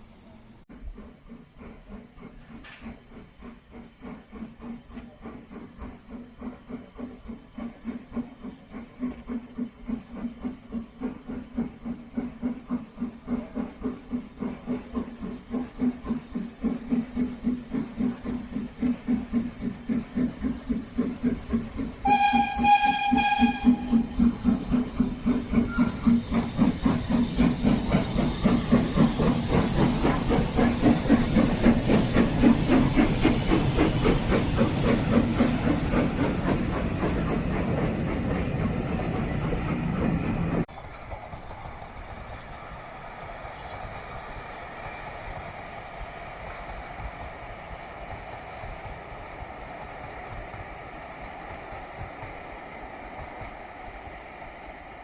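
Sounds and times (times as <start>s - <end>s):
steam locomotive exhaust beats: 0.0s - 55.0s
hiss of steam: 0.7s - 55.0s
steam whistle blast: 22.0s - 24.3s.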